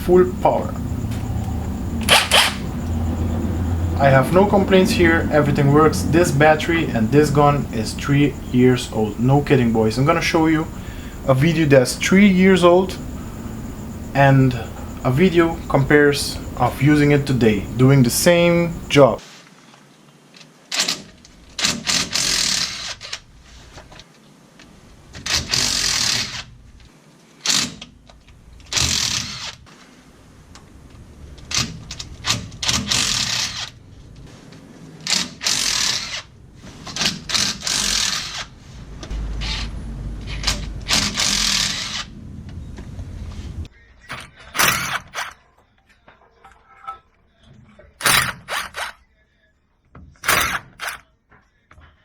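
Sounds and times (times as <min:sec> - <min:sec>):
impact wrench hammering: 0:44.1 - 0:45.4, 0:48.0 - 0:49.0, 0:50.2 - 0:51.0.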